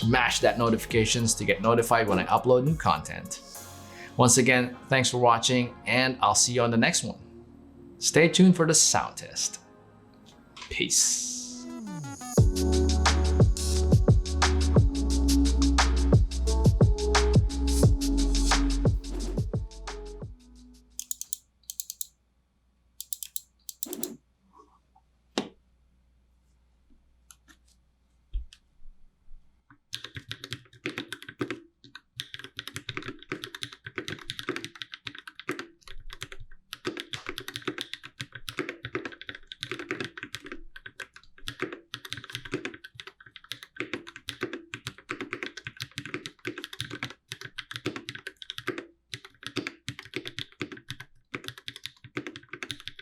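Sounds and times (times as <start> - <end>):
keyboard clicks: 21.0 - 22.1, 23.0 - 24.2
rapid typing on mechanical keyboard: 21.0 - 22.1, 23.0 - 24.1, 30.0 - 53.0.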